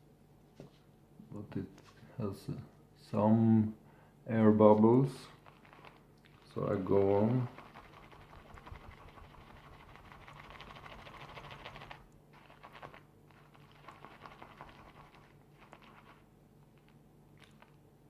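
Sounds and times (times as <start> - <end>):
shaving brush whipping lather: 5.4 - 16.2.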